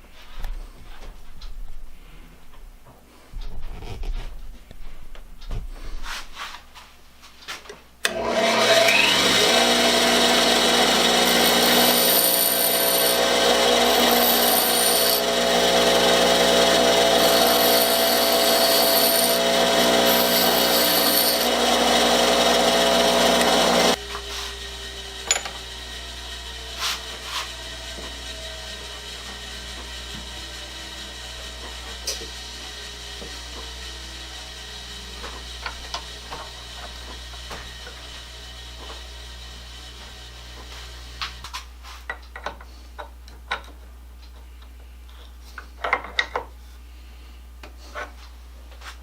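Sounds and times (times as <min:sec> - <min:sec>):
power tool motor running: 0:08.0 - 0:41.4.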